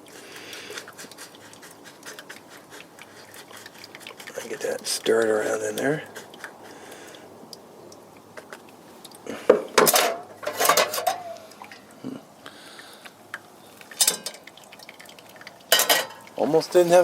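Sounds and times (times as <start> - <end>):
metal stake clinking in metal pot: 9.7 - 11.9, 13.8 - 14.7, 15.7 - 16.8.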